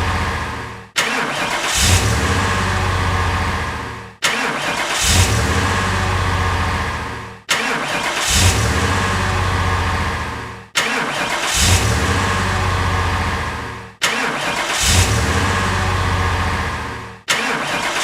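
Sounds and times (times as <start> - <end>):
car engine starting and running: 0.0 - 18.0.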